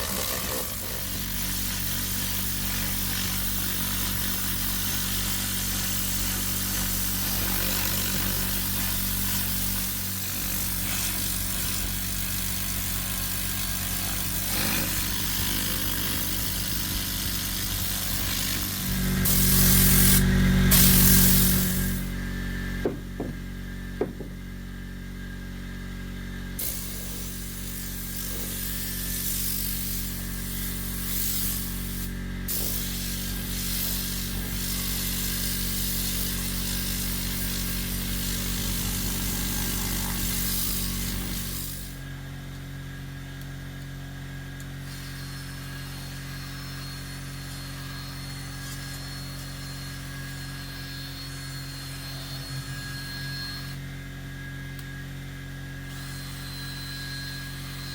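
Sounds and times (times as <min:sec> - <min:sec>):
motor humming: 0:00.0 - 0:42.4
loud hiss: 0:17.3 - 0:22.1.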